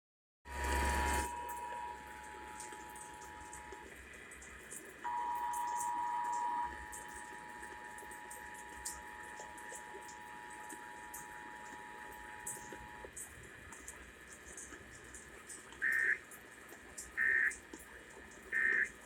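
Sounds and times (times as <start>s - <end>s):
faint two-tone alarm: 0.5s - 3.9s, 5.0s - 13.1s.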